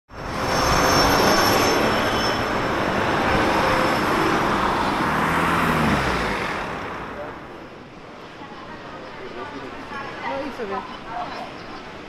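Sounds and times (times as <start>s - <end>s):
train rumbling: 0.1s - 10.2s
high-pitched squealing: 0.3s - 4.0s.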